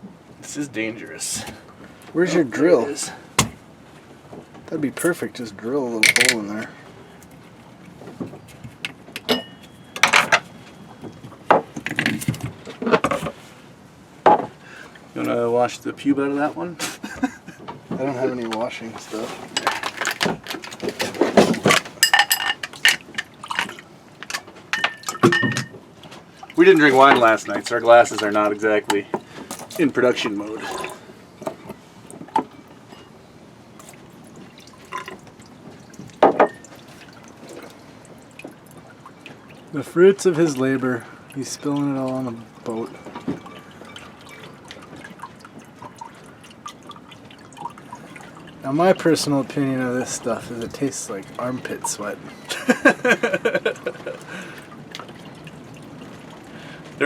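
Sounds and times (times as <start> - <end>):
hand tools knocking and clinking: 6.0 - 6.4, 9.2 - 10.4, 21.4 - 25.7
water trickling into a glass: 33.8 - 49.2.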